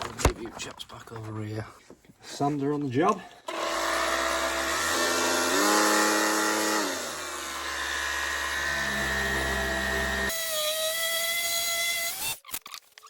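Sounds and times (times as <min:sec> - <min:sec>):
electric power sander whine: 0:03.5 - 0:10.3.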